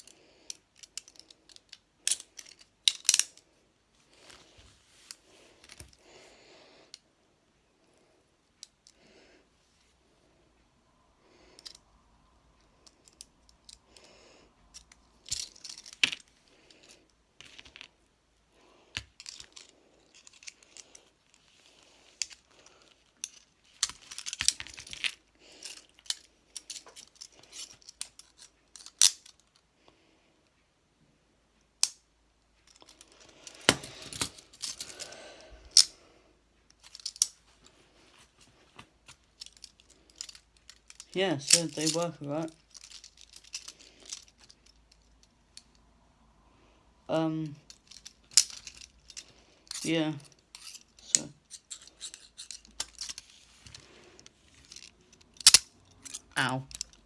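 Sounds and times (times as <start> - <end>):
metal handcuffs clicking and rattling: 0.0 - 3.5, 11.5 - 11.9, 12.7 - 17.9, 19.0 - 29.6, 32.6 - 36.0, 36.7 - 45.8, 47.4 - 57.0.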